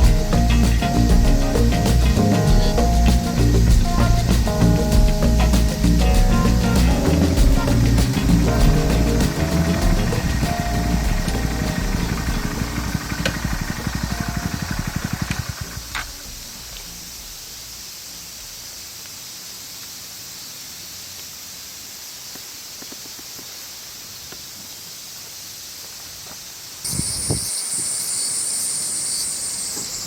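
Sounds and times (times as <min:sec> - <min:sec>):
motorcycle engine idling: 0:00.0 - 0:16.2
faint outdoor hiss: 0:00.0 - 0:30.0.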